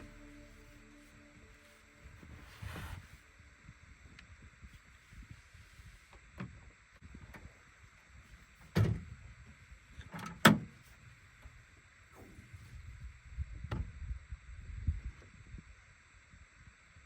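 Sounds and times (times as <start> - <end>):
knocks and clunks: 8.6 - 9.2.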